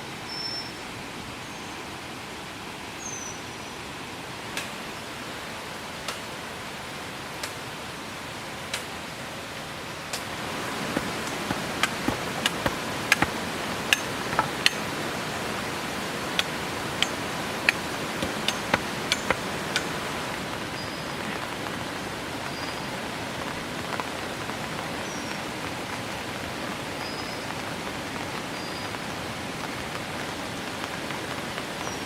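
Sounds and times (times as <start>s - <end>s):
heavy rain hiss: 0.0s - 32.0s
sharp irregular ticks: 16.4s - 20.0s.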